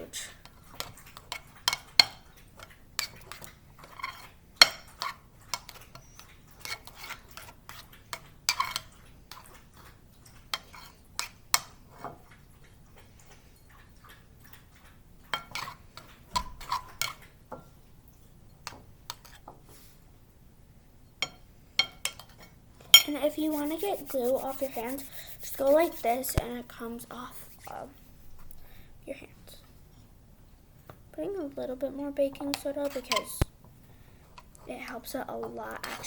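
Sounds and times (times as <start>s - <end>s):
spoon scraping a bowl: 23.0s - 26.4s, 27.0s - 27.8s.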